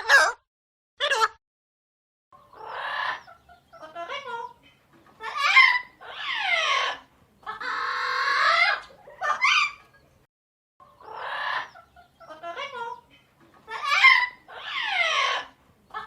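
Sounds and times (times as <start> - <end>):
parrot squawking: 0.0 - 0.4, 2.5 - 4.5, 5.2 - 10.0, 11.0 - 13.0, 13.7 - 16.0.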